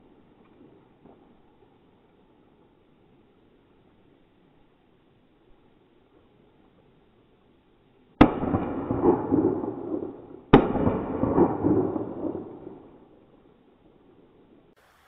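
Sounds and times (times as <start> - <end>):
shotgun shots with echo: 8.2 - 12.9.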